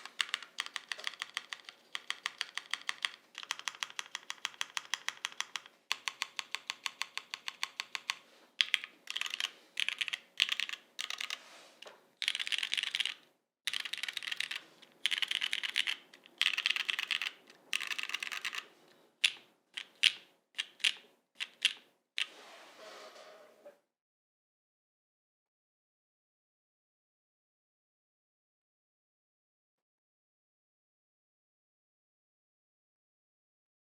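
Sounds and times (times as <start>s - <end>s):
mechanical keyboard keystrokes: 0.0s - 11.4s, 12.2s - 18.6s, 19.2s - 21.8s.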